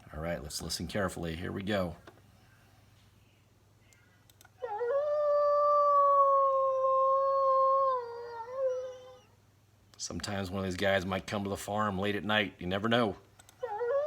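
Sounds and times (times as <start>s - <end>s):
wolf howling: 4.6s - 9.4s, 13.6s - 14.0s.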